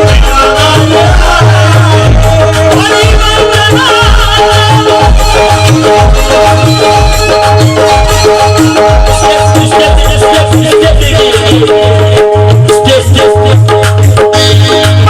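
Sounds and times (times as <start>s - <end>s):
low drum beat: 0.0s - 15.0s
rattling percussion: 0.0s - 15.0s
held melody notes: 0.1s - 10.6s.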